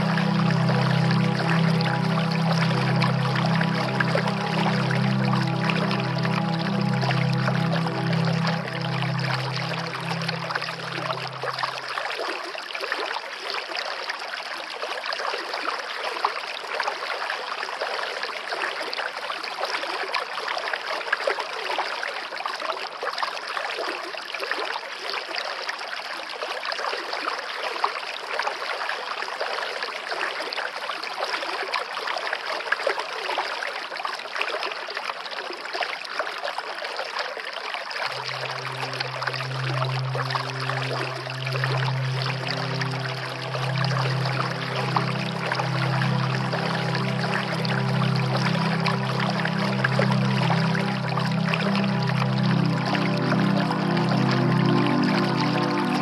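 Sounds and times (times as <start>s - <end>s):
background music: 0.0s - 12.0s, 38.1s - 56.0s
waterfall rushing: 0.0s - 12.0s, 38.1s - 56.0s.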